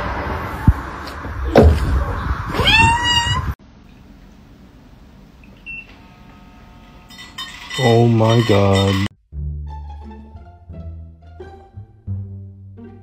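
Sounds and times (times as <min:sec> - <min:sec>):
sharp thump: 0:00.7 - 0:02.3
cat meowing: 0:02.5 - 0:03.6.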